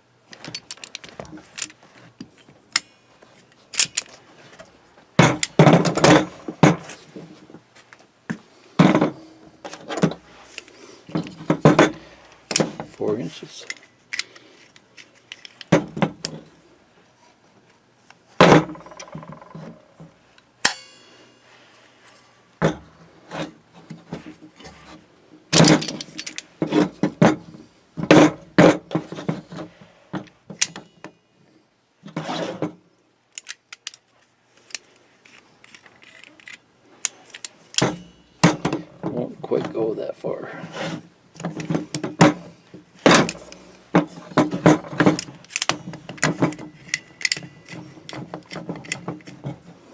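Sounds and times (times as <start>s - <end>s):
locking pliers clanking: 0.3s - 1.8s, 2.4s - 4.2s, 25.5s - 26.5s, 30.2s - 31.1s, 33.3s - 38.8s, 43.0s - 49.4s.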